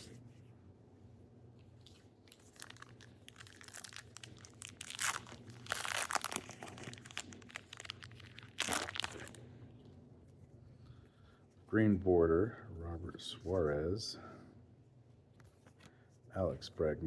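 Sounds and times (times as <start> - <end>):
card pack wrapper tearing and crinkling: 2.2 - 9.4.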